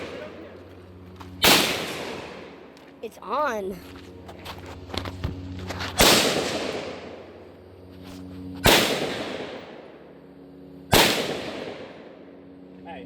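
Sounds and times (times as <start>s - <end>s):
gunshots echoing: 0.0s - 0.4s, 1.4s - 2.7s, 6.0s - 7.3s, 8.6s - 9.9s, 10.9s - 12.1s
steady low hum: 0.0s - 13.0s.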